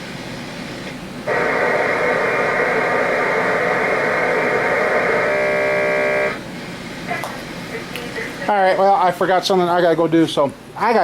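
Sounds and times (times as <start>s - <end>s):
loud steady buzzing: 1.2s - 6.5s
chord of steady tones: 1.3s - 6.4s.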